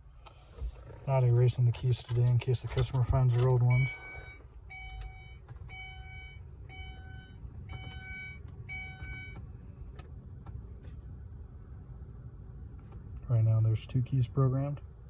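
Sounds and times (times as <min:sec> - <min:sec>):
electronic beeps: 0:03.6 - 0:09.4.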